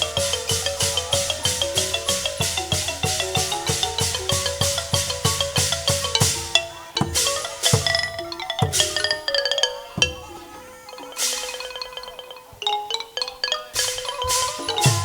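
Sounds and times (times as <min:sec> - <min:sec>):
percussion strokes: 0:00.0 - 0:15.0
xylophone melody: 0:00.0 - 0:15.0.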